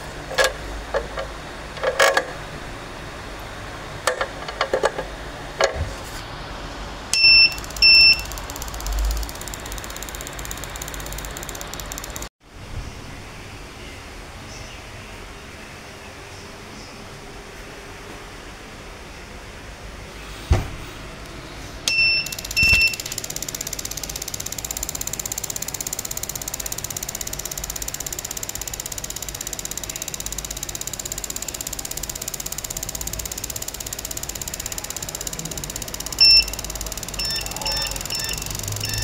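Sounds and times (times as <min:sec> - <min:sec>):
fast mechanical ticking: 0:07.2 - 0:12.3, 0:21.9 - 0:39.0
short electronic beeps: 0:07.2 - 0:12.3, 0:21.9 - 0:39.0.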